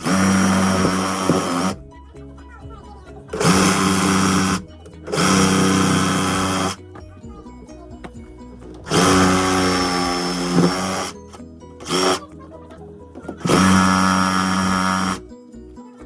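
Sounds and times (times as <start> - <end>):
handheld power tool motor: 0.0 - 1.8, 3.3 - 6.8, 8.8 - 12.2, 13.3 - 15.2.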